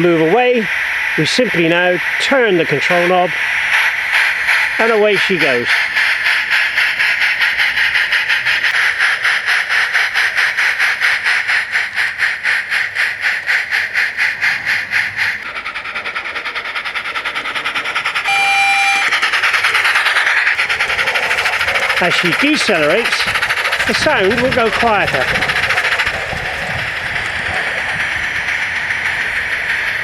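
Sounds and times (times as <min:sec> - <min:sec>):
steam exhaust chuffs from loudspeaker: 0:00.0 - 0:30.0
whistle-like tone: 0:18.2 - 0:19.8.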